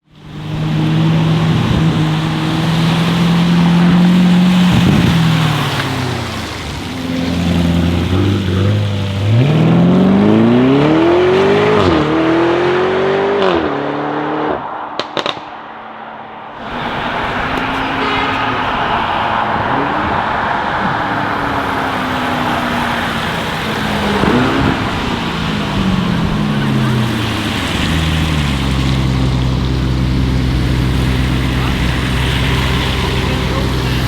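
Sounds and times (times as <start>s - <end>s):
car engine accelerating: 0.0s - 34.0s
exhaust pops: 0.1s - 9.6s, 16.6s - 34.0s.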